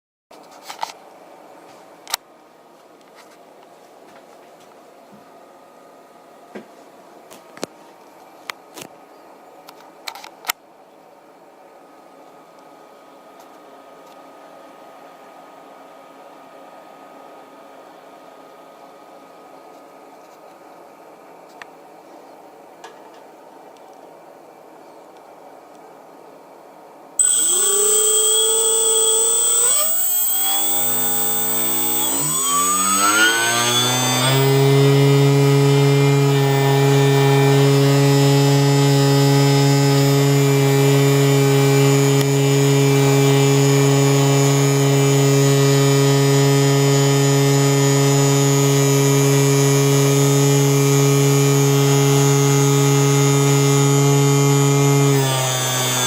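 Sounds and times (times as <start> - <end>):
spindle motor whine: 27.2 - 48.5, 49.2 - 56.0.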